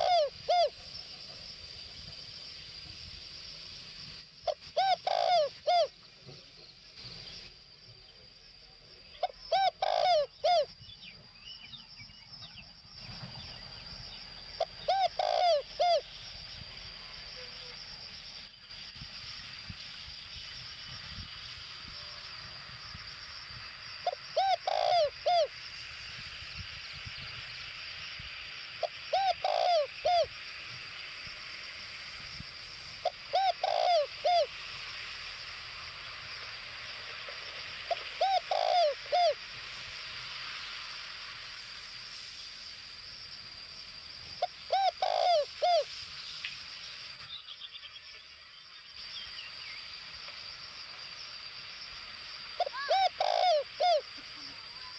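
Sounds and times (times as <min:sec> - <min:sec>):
dove cooing: 0:00.0 - 0:00.8, 0:04.5 - 0:06.0, 0:09.2 - 0:10.7, 0:14.6 - 0:16.1, 0:24.0 - 0:25.5, 0:28.8 - 0:30.3, 0:33.0 - 0:34.5, 0:37.9 - 0:39.4, 0:44.4 - 0:45.9, 0:52.6 - 0:54.4
high-pitched background hiss: 0:00.0 - 0:54.9.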